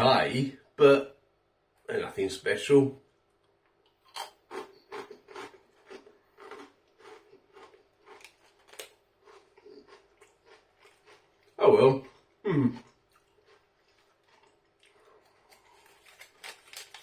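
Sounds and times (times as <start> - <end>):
chewing crunchy crackers: 3.8 - 17.0.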